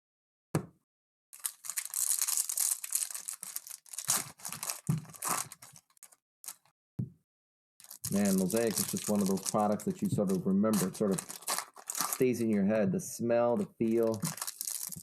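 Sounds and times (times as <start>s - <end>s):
wrapper ripping and crinkling: 1.4s - 6.7s, 7.8s - 12.6s, 13.8s - 15.0s
dull knocks of pack in hands: 4.8s - 5.2s.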